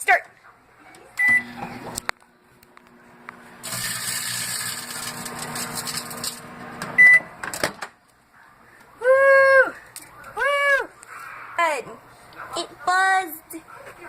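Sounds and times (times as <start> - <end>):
microwave oven humming: 0.9 - 7.7
microwave beep: 1.2 - 1.8, 6.9 - 7.4
foil bag buzzing and crackling: 3.6 - 6.4.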